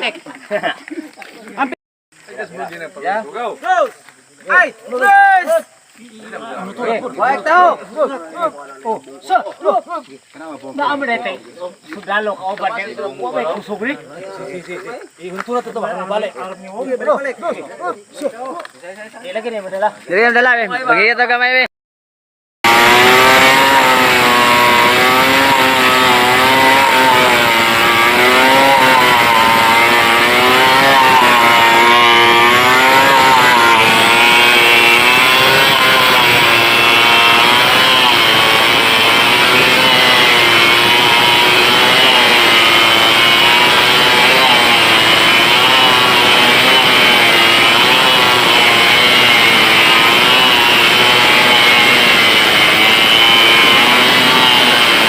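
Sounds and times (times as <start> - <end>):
chainsaw cutting log: 22.6 - 55.0.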